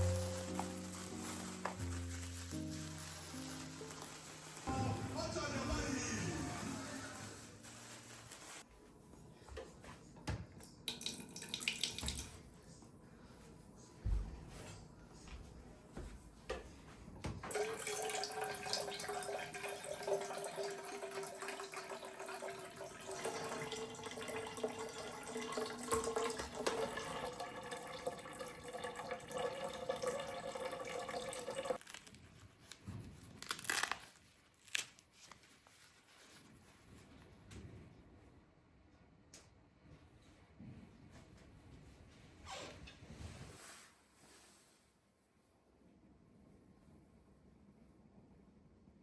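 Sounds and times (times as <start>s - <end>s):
tap water running into sink: 10.9s - 12.4s, 17.5s - 31.8s.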